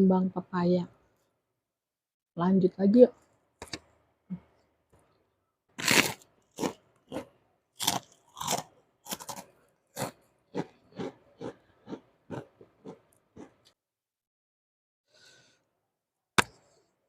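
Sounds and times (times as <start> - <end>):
person chewing crunchy food: 5.8 - 13.8.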